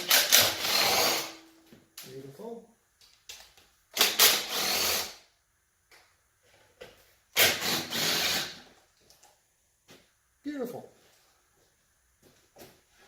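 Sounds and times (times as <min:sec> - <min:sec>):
cordless drill spinning out bolts: 0:00.0 - 0:01.4, 0:04.0 - 0:05.2, 0:07.3 - 0:08.7.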